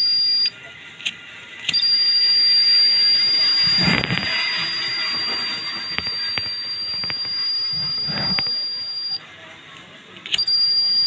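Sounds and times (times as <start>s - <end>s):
piezo buzzer high-pitched tone: 0.0s - 0.5s, 1.7s - 9.2s, 10.4s - 11.0s.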